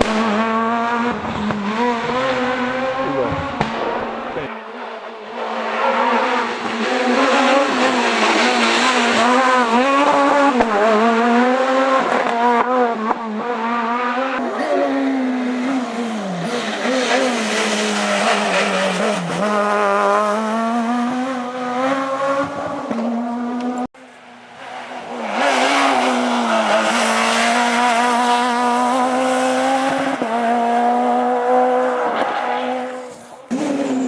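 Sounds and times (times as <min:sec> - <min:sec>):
rally car engine revving: 0:00.0 - 0:34.0.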